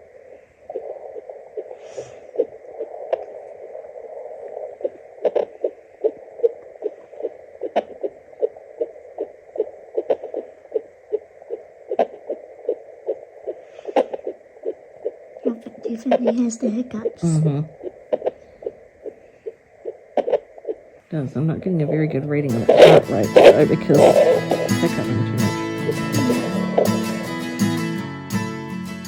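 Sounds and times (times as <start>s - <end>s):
fast heartbeat through doppler: 0.0s - 15.9s, 21.4s - 27.3s
steady hiss: 0.0s - 28.7s.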